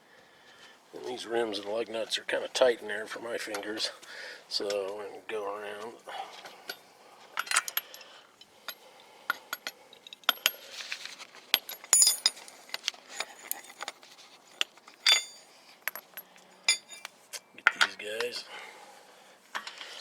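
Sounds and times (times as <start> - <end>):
metal lug nuts clinking: 7.4 - 10.7, 11.5 - 13.9, 14.5 - 18.0.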